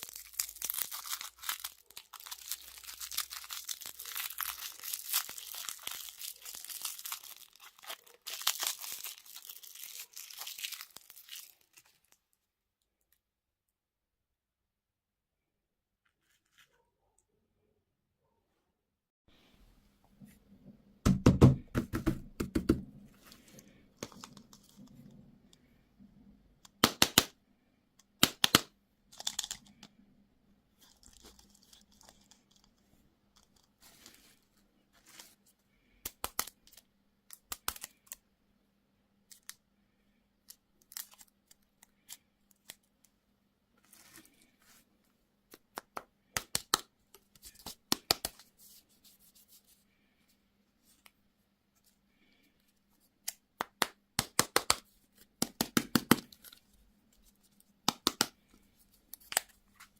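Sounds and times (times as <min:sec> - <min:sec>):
candy wrappers crinkling: 0:00.0 - 0:12.3, 0:30.8 - 0:32.8, 0:36.0 - 0:38.2, 0:40.5 - 0:42.9.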